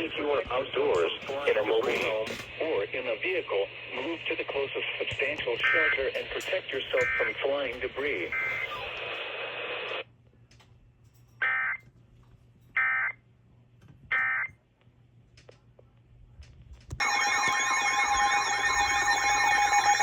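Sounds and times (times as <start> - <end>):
loud steady alert tone: 17.0 - 20.0.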